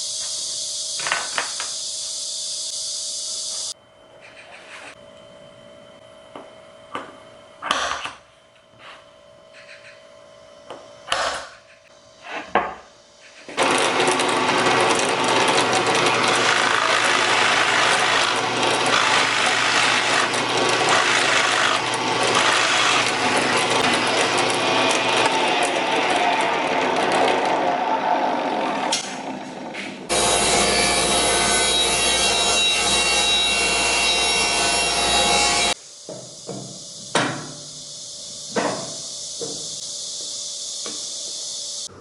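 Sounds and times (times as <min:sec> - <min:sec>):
power planer running: 0:13.6 - 0:29.3, 0:30.1 - 0:35.8.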